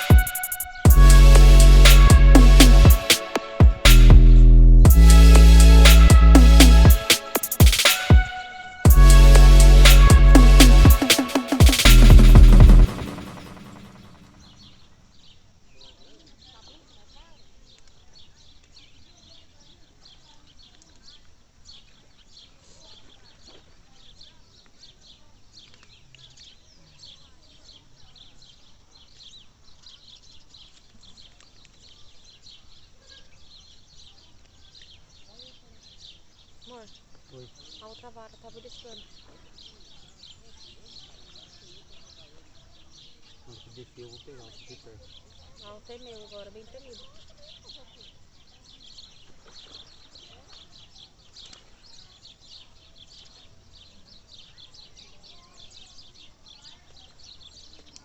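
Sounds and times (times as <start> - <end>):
small birds chirping: 24.1 - 58.0.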